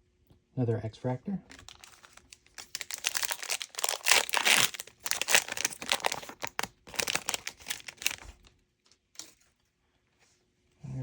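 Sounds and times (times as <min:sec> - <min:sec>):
foil wrapper tearing and crinkling: 0:01.5 - 0:08.5.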